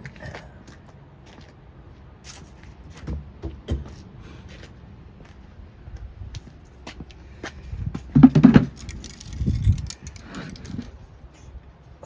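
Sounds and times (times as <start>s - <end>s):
metal clatter: 8.2s - 10.9s
metal tools clinking: 8.7s - 10.9s.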